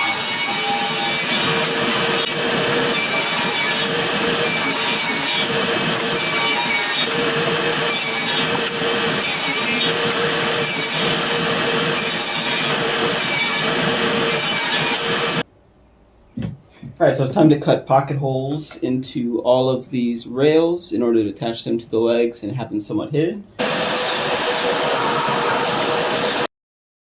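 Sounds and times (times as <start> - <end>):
saw cutting wooden boards: 0.0 - 15.4, 23.6 - 26.5.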